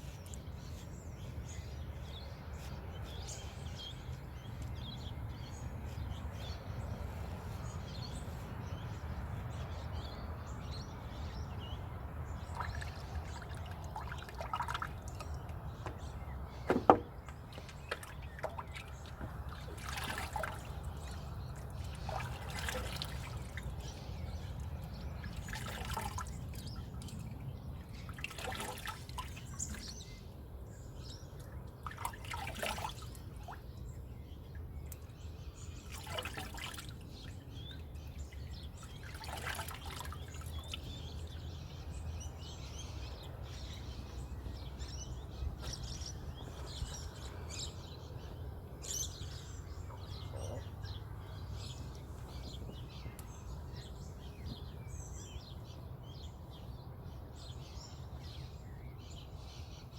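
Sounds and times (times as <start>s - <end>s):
small birds chirping: 0.0s - 59.9s
water splashing and dripping: 12.4s - 30.0s, 31.4s - 33.7s, 34.5s - 41.4s
sharp knock: 16.7s - 17.1s.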